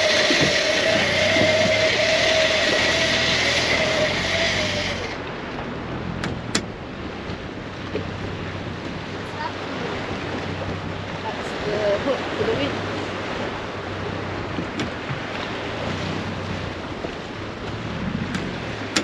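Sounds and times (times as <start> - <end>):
motor whining: 0.0 - 5.2.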